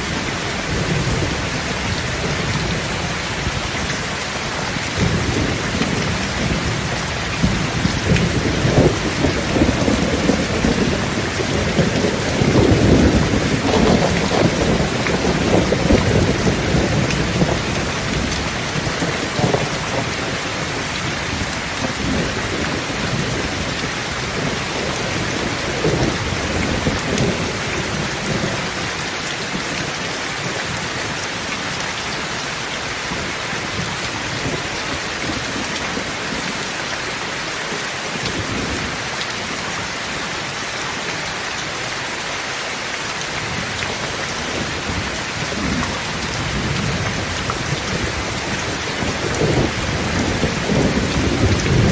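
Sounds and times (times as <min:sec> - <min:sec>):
rain hissing: 0:00.0 - 0:51.9
rolling thunder: 0:04.6 - 0:29.0, 0:43.4 - 0:51.9.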